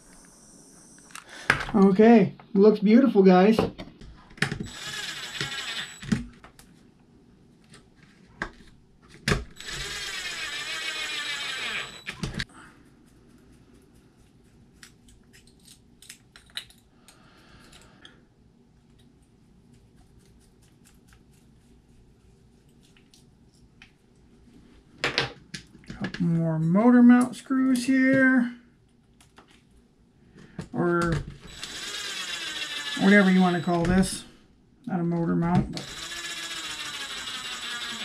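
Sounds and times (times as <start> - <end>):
hissing gas with high whistle: 0.0 - 1.2
small parts and tools clicking: 4.4 - 6.5, 14.7 - 18.2, 35.8 - 38.0.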